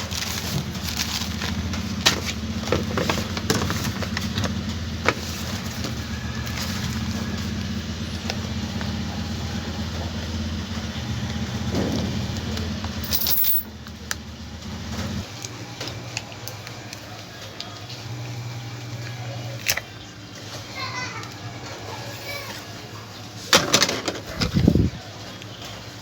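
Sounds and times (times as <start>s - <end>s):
hand tools clicking and scraping: 11.8s - 14.2s.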